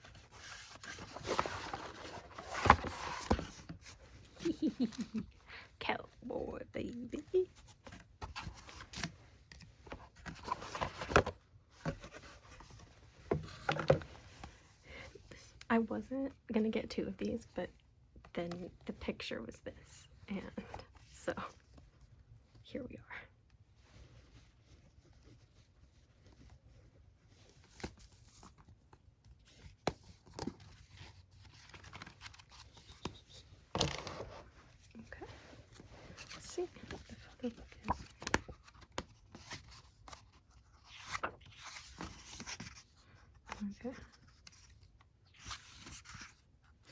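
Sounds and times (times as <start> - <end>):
paper packaging rustling: 0.0 - 5.3.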